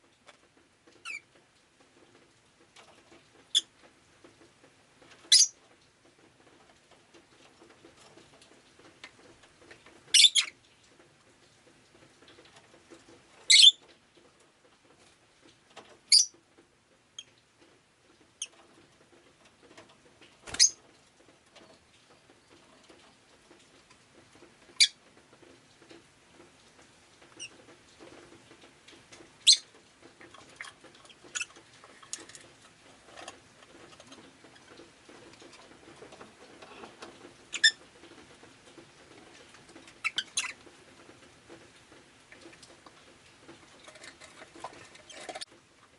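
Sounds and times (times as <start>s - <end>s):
lovebird chirping: 5.3s - 5.5s, 13.5s - 13.8s, 29.4s - 29.6s.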